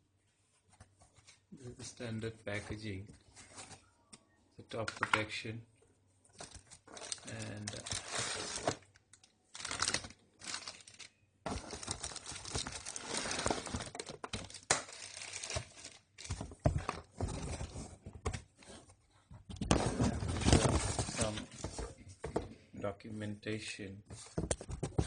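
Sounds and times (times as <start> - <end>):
wrapping crinkling and rustling: 6.4 - 17.8, 19.9 - 22.0.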